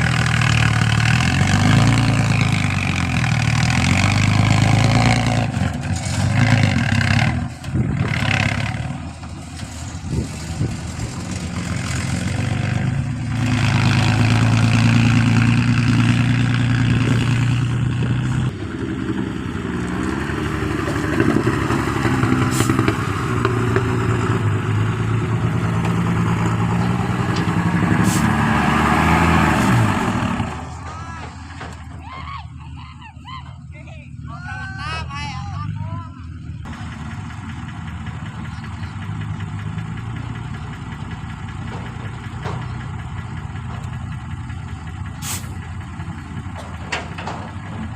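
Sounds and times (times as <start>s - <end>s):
clatter: 0.0s - 24.4s, 36.7s - 47.9s
excavator diesel engine: 0.0s - 47.9s.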